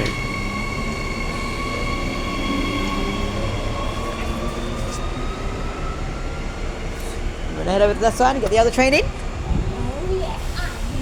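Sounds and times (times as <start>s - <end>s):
electric train motor whine: 0.0s - 7.0s
train rolling rumble: 0.0s - 11.0s.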